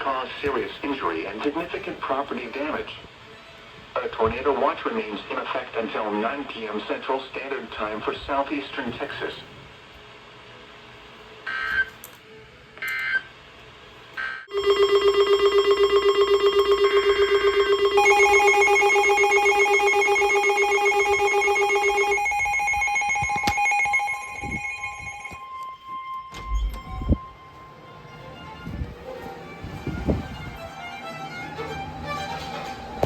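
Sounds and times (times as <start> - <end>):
steady alarm tone: 14.2 - 28.0
pulsing electronic alert tone: 14.5 - 25.6
high steady tones: 14.5 - 27.8.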